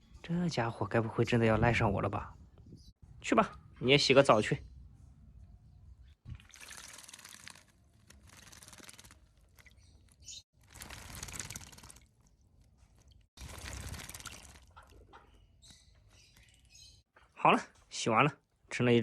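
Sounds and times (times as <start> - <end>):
bird splashing in water: 6.2 - 15.2.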